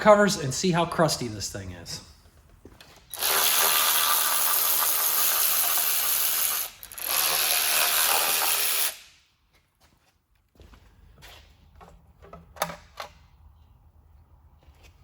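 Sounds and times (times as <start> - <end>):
power ratchet spinning: 3.1 - 9.1.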